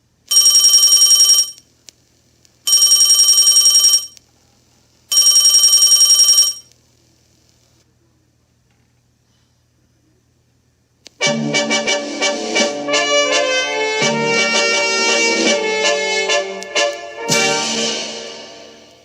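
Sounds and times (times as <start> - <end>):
telephone bell ringtone: 0.3 - 1.6, 2.7 - 4.2, 5.1 - 6.7.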